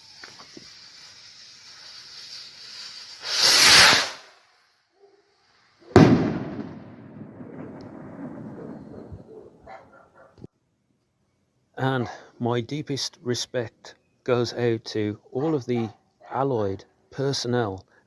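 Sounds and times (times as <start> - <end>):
firework rocket fizzing: 0.0 - 4.6, 5.6 - 9.1
firework bang: 3.3 - 4.2, 5.9 - 9.3.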